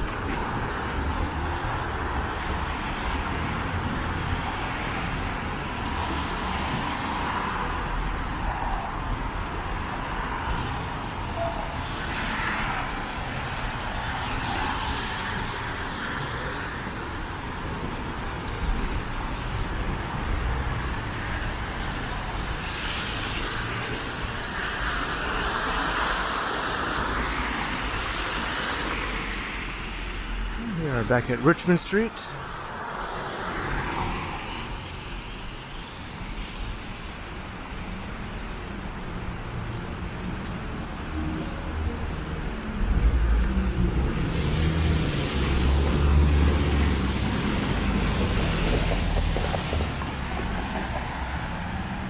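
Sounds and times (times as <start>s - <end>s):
street traffic rumble: 0.0s - 52.0s
cars driving past: 36.1s - 52.0s.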